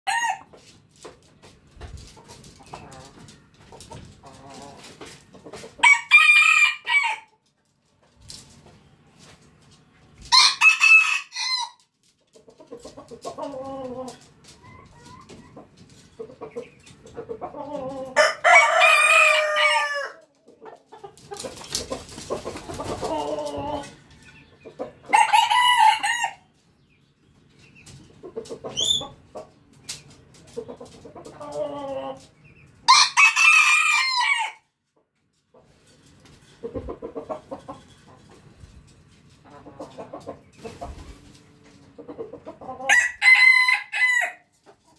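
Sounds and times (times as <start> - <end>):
roosters crowing: 0.1 - 0.5, 5.8 - 7.3, 10.3 - 11.8, 17.7 - 20.3, 25.1 - 26.4, 32.8 - 34.6, 42.8 - 44.5.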